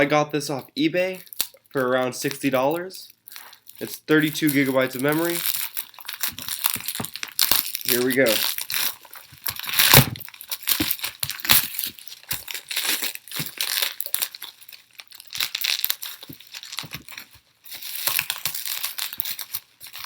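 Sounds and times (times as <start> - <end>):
plastic packaging crinkling: 1.0 - 20.0.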